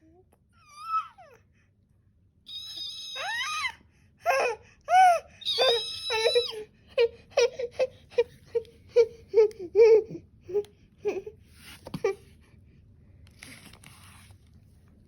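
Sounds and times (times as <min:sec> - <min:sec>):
high-pitched squeals and whimpers: 0:02.5 - 0:06.7.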